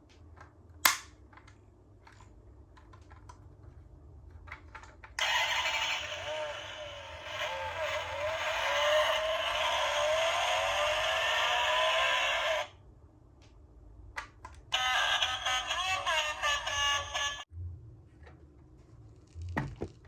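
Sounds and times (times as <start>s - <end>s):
toy cars rolling and rattling: 4.3s - 12.7s.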